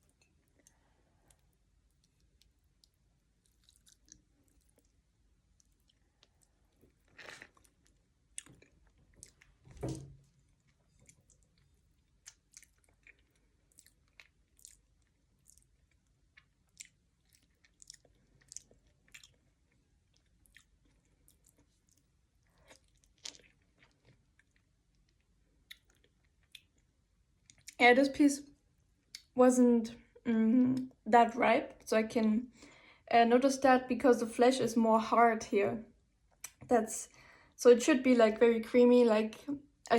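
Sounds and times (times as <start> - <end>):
wet chewing and mouth clicks: 0.0 - 27.8, 36.4 - 36.7
thump: 9.7 - 10.2.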